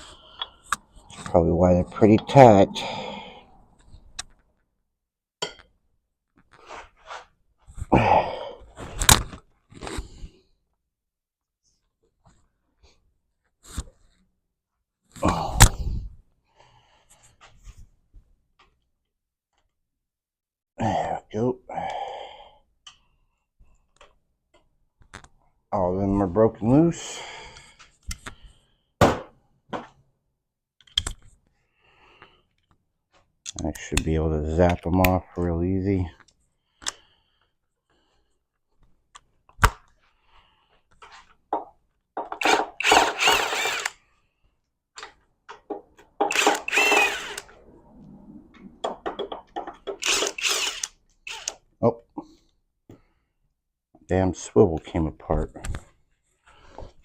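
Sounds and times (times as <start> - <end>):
person straining breath: 2.5 - 3.8, 7.9 - 8.8
tools knocking and clicking: 41.6 - 43.3, 45.0 - 47.1, 48.8 - 51.6
wrench clicking and scraping: 42.2 - 44.0, 46.2 - 47.5, 49.6 - 51.6.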